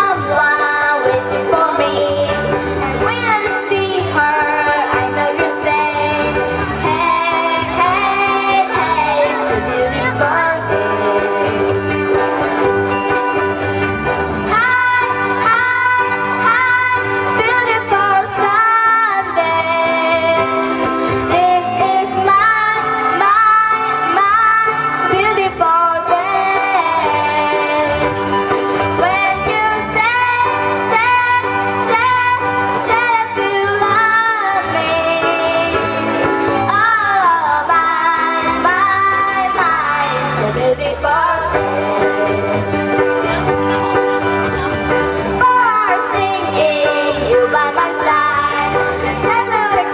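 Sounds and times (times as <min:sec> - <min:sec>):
children singing: 0:00.0 - 0:11.7, 0:29.0 - 0:42.6, 0:45.4 - 0:49.9.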